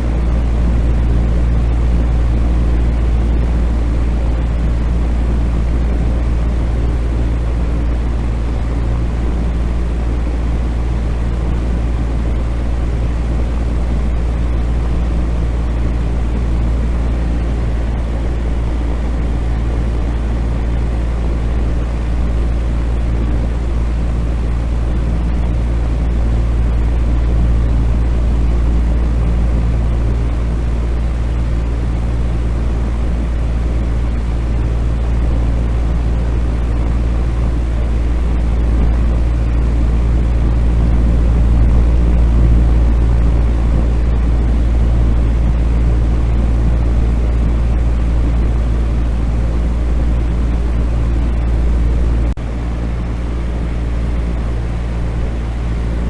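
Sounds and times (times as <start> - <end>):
fan humming: 0.0 - 56.0.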